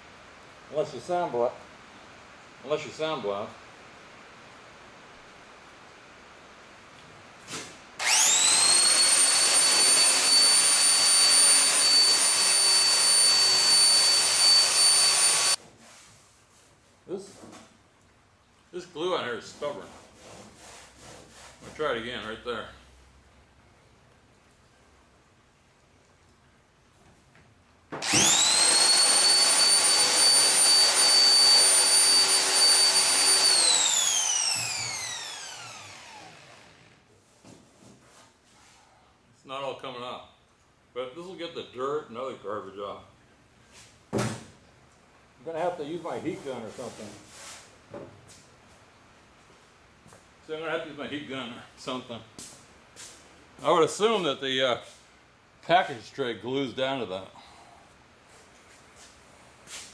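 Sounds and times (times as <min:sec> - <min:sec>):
power drill whining: 0:08.0 - 0:15.6, 0:28.0 - 0:37.1.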